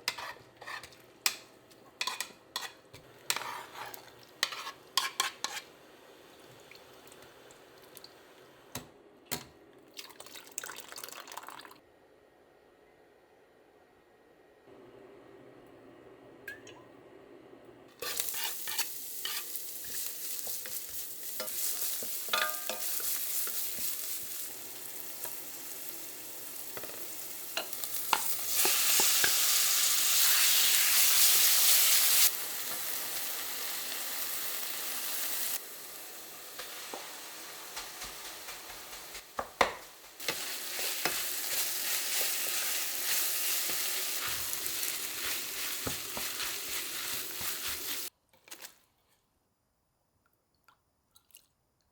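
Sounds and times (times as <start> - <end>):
utensil scraping a pan: 0.0 - 1.4, 2.0 - 5.7, 18.0 - 23.8
food sizzling in a frying pan: 18.0 - 39.2, 39.8 - 48.1.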